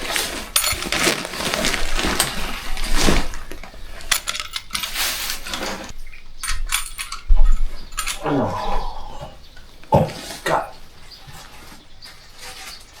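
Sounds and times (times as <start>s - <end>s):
backpack rustling: 0.0s - 5.9s
light metallic clinks and rattles: 0.6s - 1.2s, 4.0s - 8.3s.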